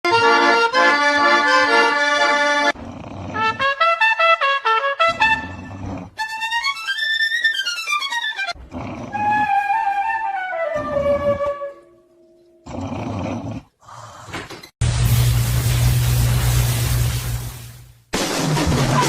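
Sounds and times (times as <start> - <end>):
fiddle-like music with pitch slides: 6.2 - 8.6.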